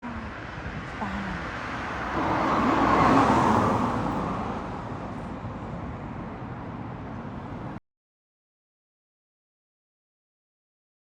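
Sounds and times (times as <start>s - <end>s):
car passing: 0.1s - 7.8s.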